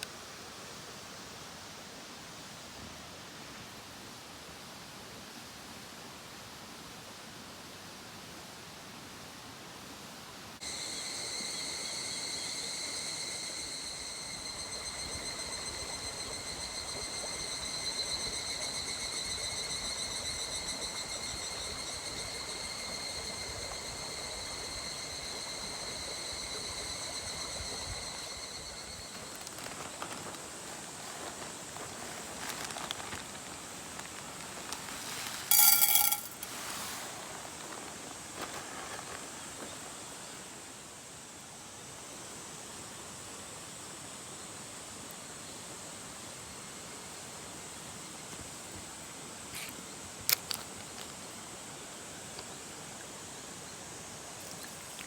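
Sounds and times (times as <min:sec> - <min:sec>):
high-pitched insect trill: 0:10.6 - 0:30.6, 0:35.5 - 0:36.8
mountain stream running: 0:45.6 - 0:55.0.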